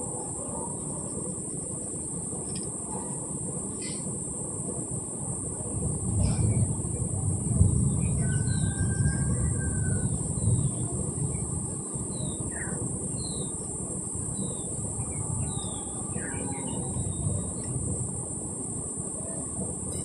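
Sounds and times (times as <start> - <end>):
constant high hiss: 0.0 - 20.0
steady low rumbling: 4.6 - 20.0.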